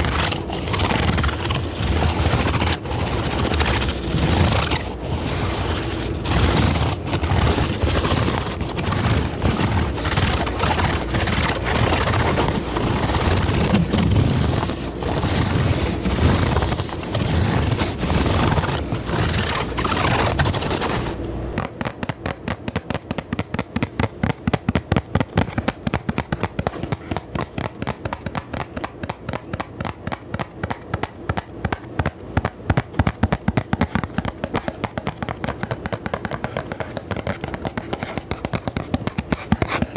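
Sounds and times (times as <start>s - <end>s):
scratching on microphone: 0.0s - 21.2s, 25.4s - 28.9s, 33.4s - 39.9s
fast even tapping: 0.0s - 39.9s.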